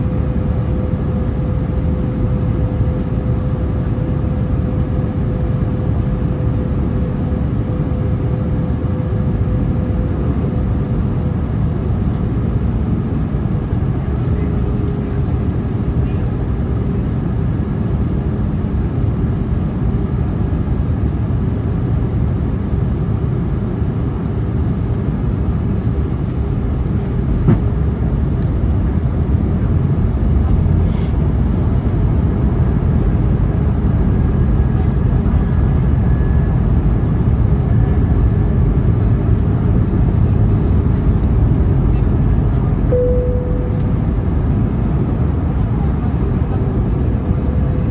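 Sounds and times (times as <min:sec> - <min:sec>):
distant jet engines: 0:00.0 - 0:47.9
wind rumbling on microphone: 0:25.9 - 0:42.9.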